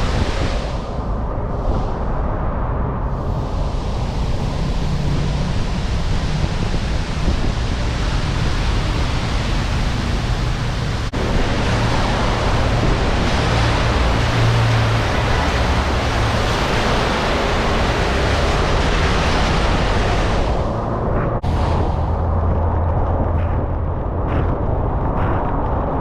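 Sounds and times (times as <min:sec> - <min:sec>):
low engine hum: 0:00.0 - 0:26.0
wind rushing over microphone: 0:00.0 - 0:26.0.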